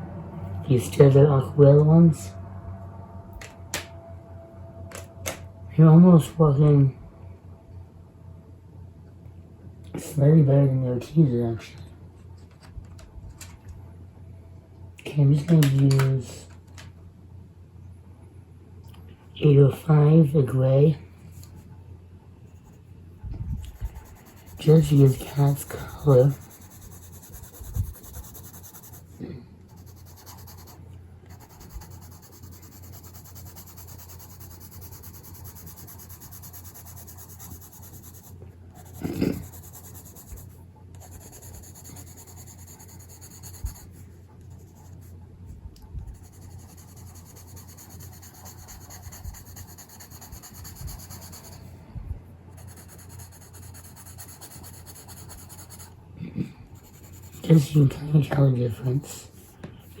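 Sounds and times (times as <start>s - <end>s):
pencil scratching on paper: 23.6s - 45.2s, 46.1s - 51.7s, 52.6s - 56.0s, 56.8s - 57.9s.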